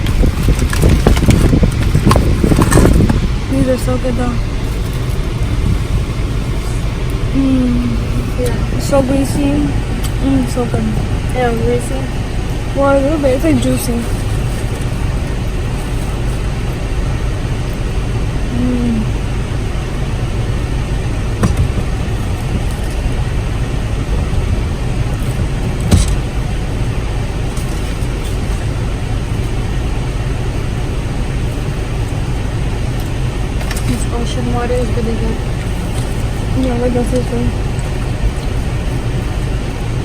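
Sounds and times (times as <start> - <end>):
car engine idling: 0.0 - 40.0.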